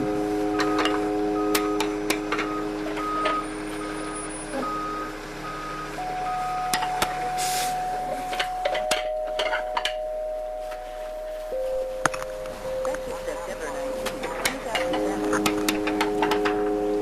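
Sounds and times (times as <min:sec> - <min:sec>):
steady electronic tones: 0:00.0 - 0:17.0
short electronic beeps: 0:02.5 - 0:08.7
brief hiss: 0:07.4 - 0:07.8.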